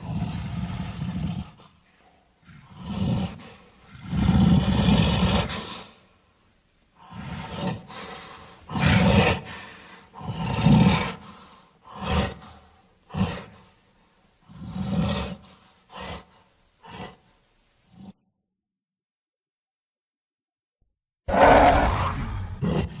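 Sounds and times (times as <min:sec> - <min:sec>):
creature roars and growls: 0:21.3 - 0:23.0.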